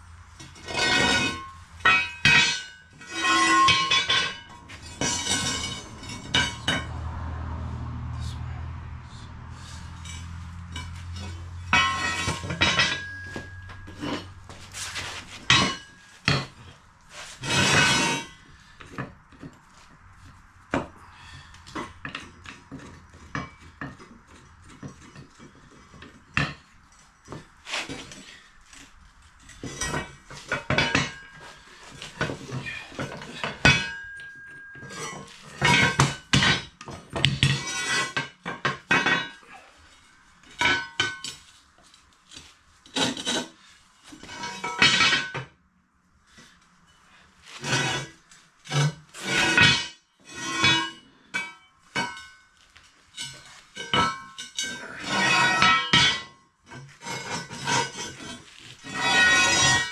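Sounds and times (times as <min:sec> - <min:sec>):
steel pieces clanking: 0:00.4 - 0:06.9, 0:09.7 - 0:19.1, 0:29.5 - 0:41.5, 0:47.5 - 0:59.9.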